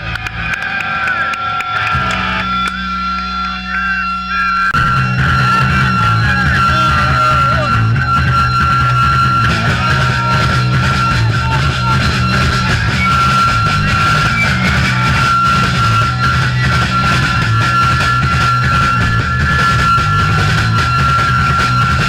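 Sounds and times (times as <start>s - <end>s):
high-pitched whine: 0.0s - 22.0s
live punk rock band: 0.0s - 22.0s.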